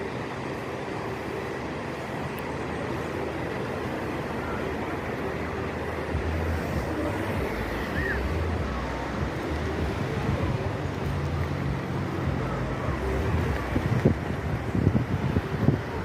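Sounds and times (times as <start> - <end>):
sea surf rushing: 0.0 - 16.0
wind buffeting microphone: 6.0 - 16.0.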